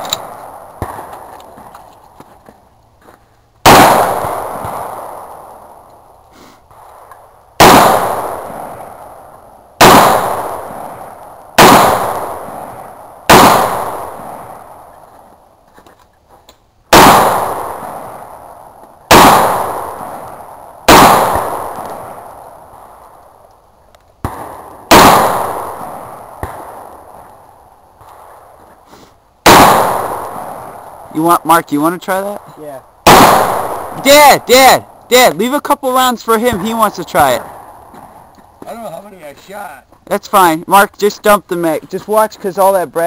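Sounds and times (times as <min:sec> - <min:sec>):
echoing gunshots: 0:00.0 - 0:01.7, 0:03.6 - 0:05.9, 0:06.7 - 0:15.0, 0:16.9 - 0:23.4, 0:24.2 - 0:28.6, 0:29.4 - 0:39.0.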